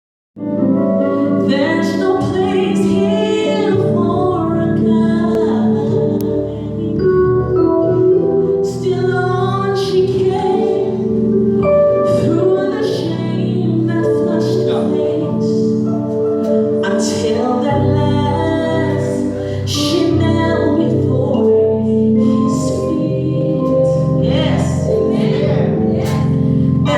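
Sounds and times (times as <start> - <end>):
bass: 0.4 - 26.9
music with singing: 0.4 - 26.9.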